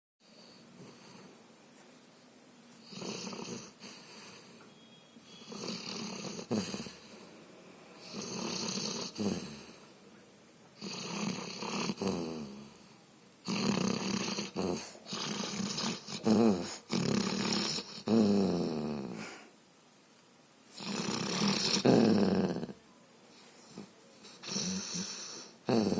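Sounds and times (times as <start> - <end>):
dog snoring: 2.8 - 4.6, 5.3 - 7.3, 8.0 - 9.8, 10.8 - 19.5, 20.7 - 22.8, 23.6 - 25.9.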